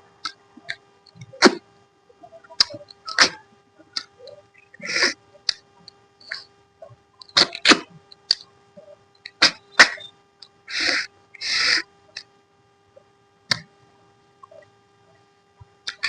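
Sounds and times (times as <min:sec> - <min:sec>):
mouth clicks and smacks: 0:02.4 - 0:03.4, 0:04.0 - 0:06.5, 0:07.2 - 0:12.3.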